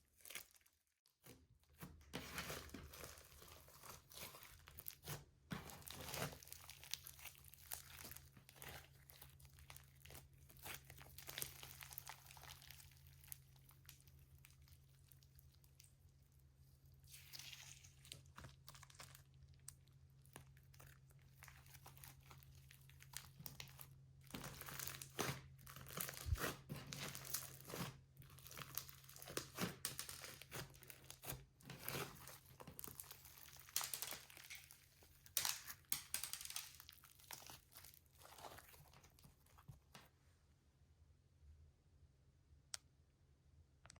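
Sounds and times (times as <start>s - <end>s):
plastic bags crinkling: 28.3s - 39.6s.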